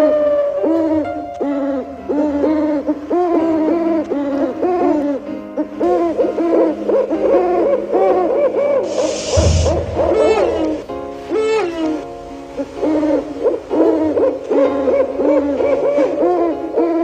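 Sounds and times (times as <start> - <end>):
owl hooting: 5.8 - 10.8.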